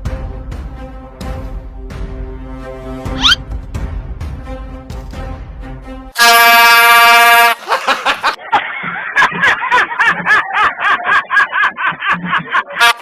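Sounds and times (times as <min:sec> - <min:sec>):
air horn blast: 0:06.1 - 0:07.7
people laughing: 0:07.5 - 0:13.0.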